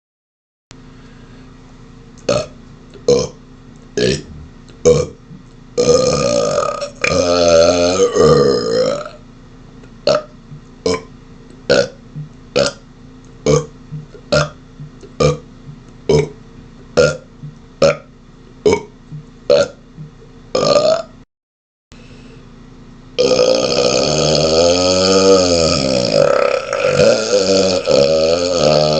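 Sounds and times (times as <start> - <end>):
man burping: 2.3 - 3.4, 4.0 - 5.2, 5.8 - 9.2, 10.1 - 11.1, 11.7 - 12.8, 13.5 - 14.6, 15.2 - 15.4, 16.1 - 16.4, 17.0 - 18.9, 19.5 - 19.8, 20.6 - 21.2, 23.2 - 28.9.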